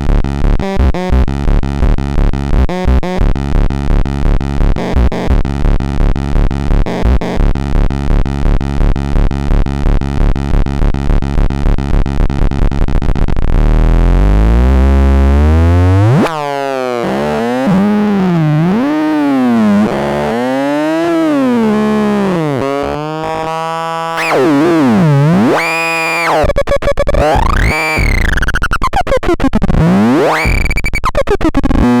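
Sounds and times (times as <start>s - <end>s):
fast buzzy synthesizer pulse: 12.7s - 32.0s
rising synth bass sweep: 13.5s - 26.5s, 27.1s - 28.5s, 29.4s - 32.0s
gliding synth tones: 24.2s - 26.5s.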